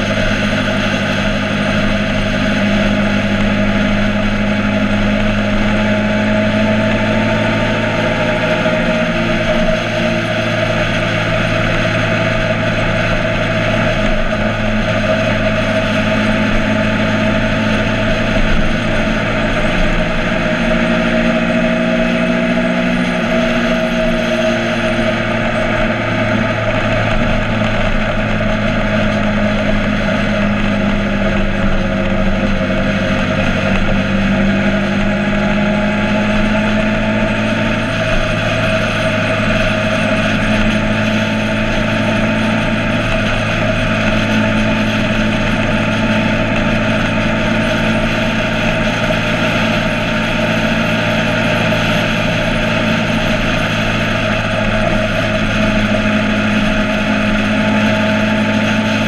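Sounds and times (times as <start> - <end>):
motorcycle engine running: 0.0 - 59.0.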